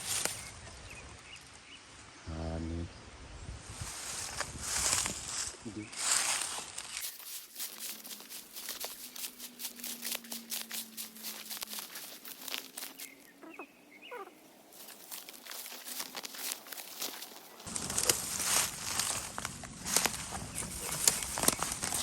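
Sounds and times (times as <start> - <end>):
small clicks and crinkling: 14.8 - 22.0.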